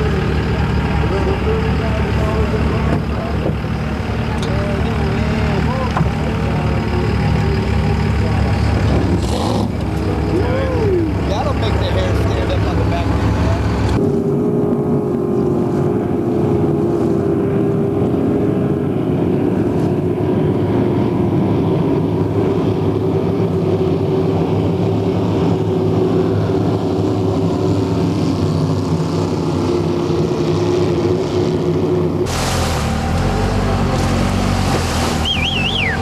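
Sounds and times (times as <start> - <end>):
hissing engine and water noise: 0.0 - 14.0, 32.2 - 36.0
motorboat engine running: 0.0 - 36.0.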